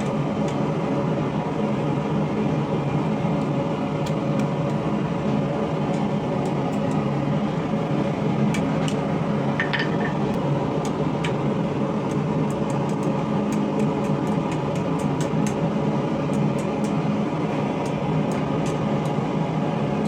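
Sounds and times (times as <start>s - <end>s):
steady mechanical hum: 0.0s - 20.0s
short metallic clink: 9.6s - 10.2s.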